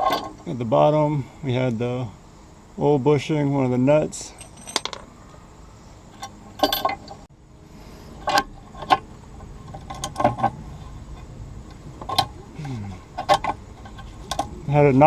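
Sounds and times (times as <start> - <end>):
metal parts clinking: 0.0 - 0.4, 4.2 - 5.1, 6.1 - 7.2.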